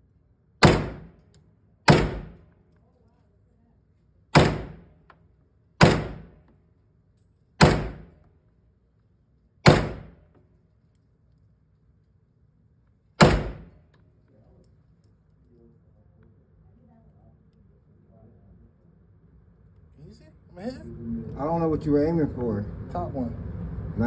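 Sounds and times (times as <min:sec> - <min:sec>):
gunshots with echo: 0:00.6 - 0:01.1, 0:01.9 - 0:02.4, 0:04.4 - 0:04.9, 0:05.8 - 0:06.4, 0:07.6 - 0:08.2, 0:09.6 - 0:10.2, 0:13.2 - 0:13.8.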